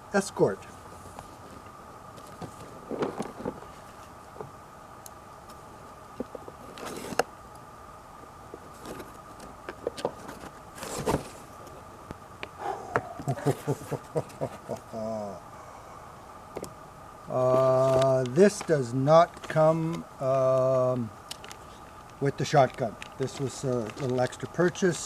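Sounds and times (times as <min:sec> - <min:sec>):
faint steady hum: 0:00.0 - 0:25.0
packaging rustling: 0:10.1 - 0:11.5.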